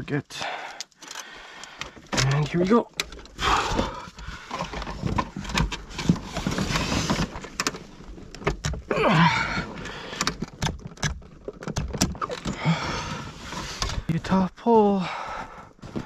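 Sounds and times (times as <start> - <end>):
person straining with effort: 3.4 - 4.2, 8.9 - 9.8, 12.4 - 13.3.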